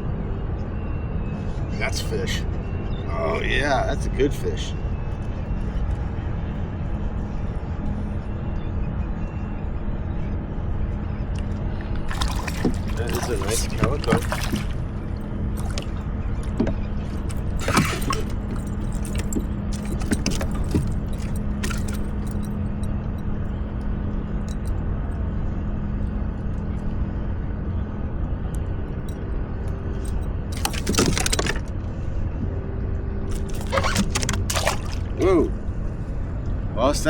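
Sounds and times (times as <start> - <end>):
constant hum: 0.0 - 37.0
fishing tackle jangling: 17.0 - 22.6, 30.0 - 31.7, 33.3 - 35.1.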